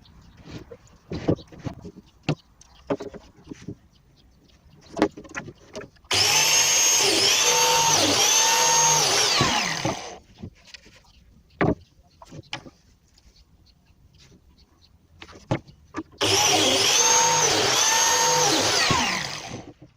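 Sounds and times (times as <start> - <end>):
biscuit jointer motor whine: 6.1 - 10.2, 16.2 - 19.7
board and tool knocks: 11.6 - 11.8.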